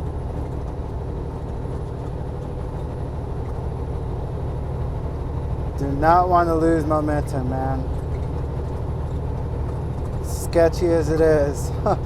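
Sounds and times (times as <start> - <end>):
diesel truck engine under load: 0.0 - 12.0.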